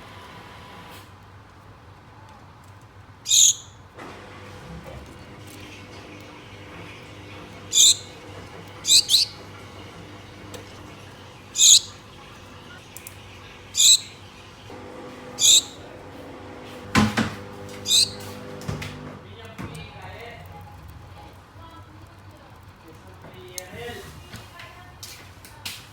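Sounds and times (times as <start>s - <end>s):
finches calling: 3.3s - 3.8s, 6.3s - 10.3s, 10.9s - 12.8s, 13.4s - 14.5s, 15.3s - 16.0s, 17.7s - 18.4s.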